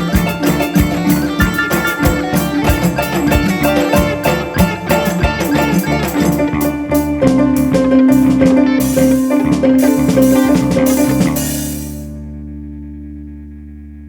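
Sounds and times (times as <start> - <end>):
fast percussion strokes: 0.0 - 12.2.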